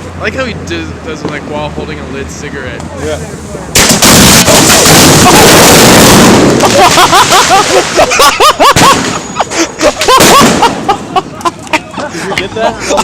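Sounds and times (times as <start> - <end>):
fireworks bangs and crackling: 3.7 - 9.4, 10.0 - 11.0.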